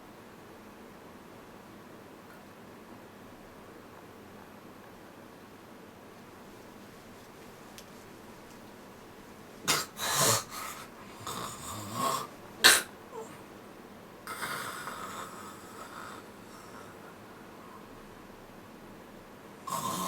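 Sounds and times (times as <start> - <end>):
person snoring: 9.7 - 13.4, 14.3 - 17.8, 19.7 - 20.0.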